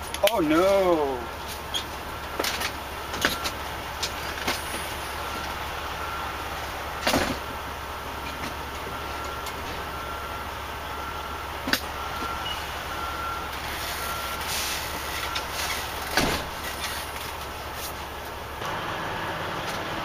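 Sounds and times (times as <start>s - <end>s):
truck engine idling: 0.0s - 20.0s
faint high beep: 12.0s - 14.4s.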